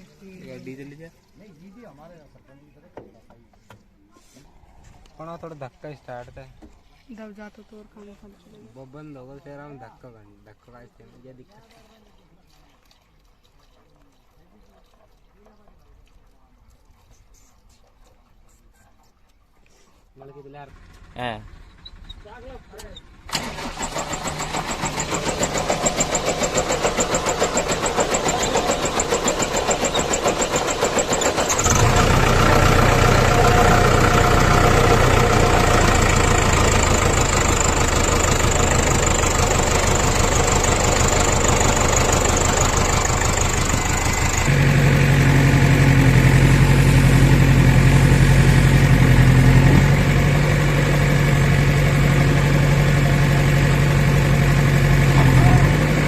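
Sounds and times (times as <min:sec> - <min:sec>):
diesel engine running: 0:20.7 - 0:56.0.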